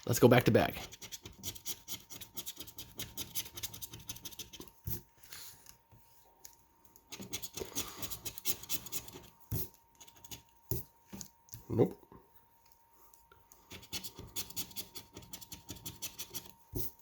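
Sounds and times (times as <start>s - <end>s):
scratching lottery ticket: 0.7s - 5.8s, 7.0s - 10.5s, 13.6s - 16.6s.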